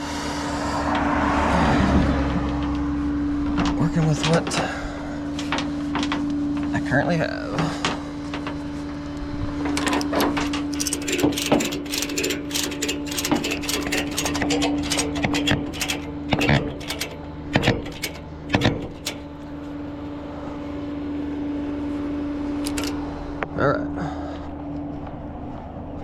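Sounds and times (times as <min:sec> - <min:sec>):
steady low hum: 0:02.9 - 0:26.0
metal clanks: 0:09.6 - 0:19.9, 0:22.6 - 0:23.0
metal chain clicking and clinking: 0:09.8 - 0:19.4, 0:22.6 - 0:23.0.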